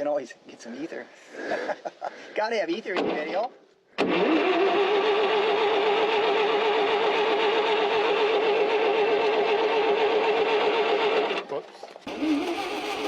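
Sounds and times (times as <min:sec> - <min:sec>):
starter motor cranking engine: 0:04.0 - 0:13.0.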